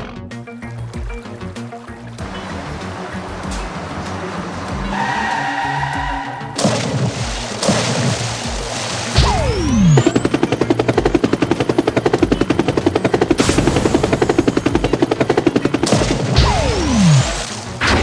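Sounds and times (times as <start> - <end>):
background music: 0.0 - 18.0
falling whistle glide: 4.6 - 7.5.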